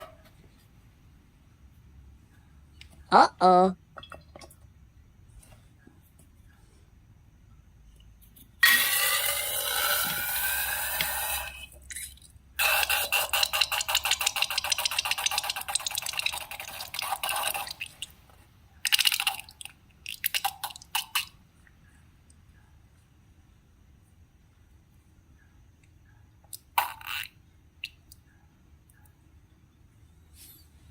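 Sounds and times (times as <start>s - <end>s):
wet crackling and popping slime: 18.8s - 21.3s.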